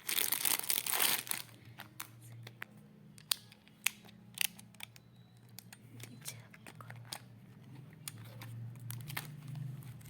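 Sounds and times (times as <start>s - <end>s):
packaging clicks and snips: 1.2s - 7.3s.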